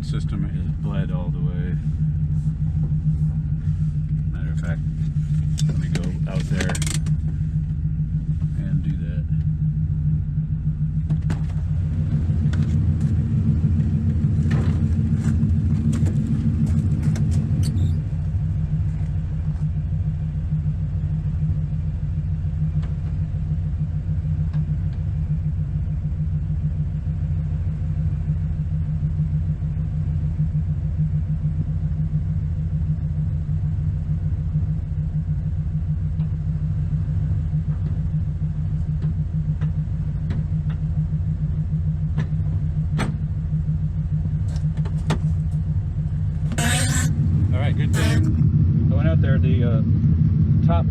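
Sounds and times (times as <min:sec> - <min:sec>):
car engine idling deep rumble: 0:00.0 - 0:50.9.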